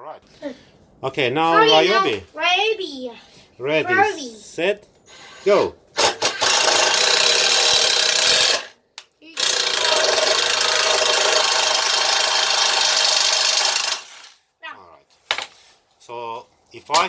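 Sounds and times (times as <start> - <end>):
impact driver rattling: 6.0 - 8.7, 9.4 - 14.3.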